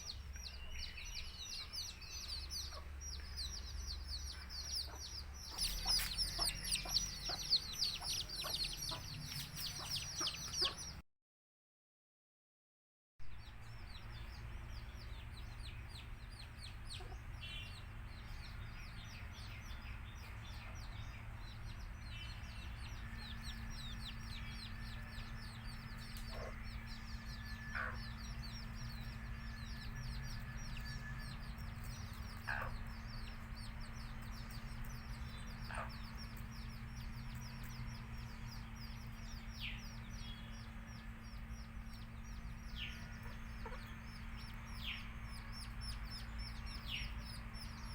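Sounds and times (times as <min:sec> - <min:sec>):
baby chicks peeping: 0:00.0 - 0:11.0, 0:13.9 - 0:47.9
steady low hum: 0:00.0 - 0:11.0, 0:13.3 - 0:47.9
hen clucking: 0:04.1 - 0:11.0, 0:27.7 - 0:28.3, 0:32.3 - 0:33.0, 0:35.6 - 0:36.2.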